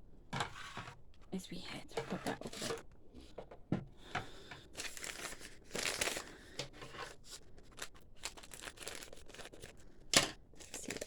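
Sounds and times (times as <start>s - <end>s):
plastic packaging rustling: 4.6s - 11.0s.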